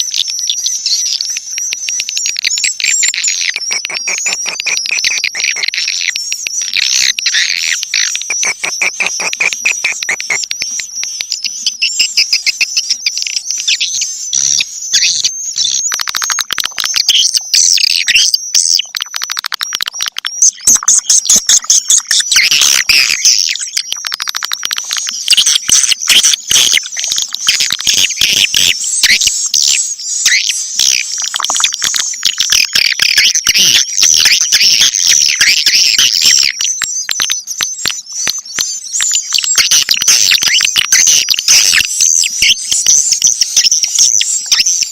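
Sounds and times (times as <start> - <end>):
swiftlets twittering: 1.3 - 13.4.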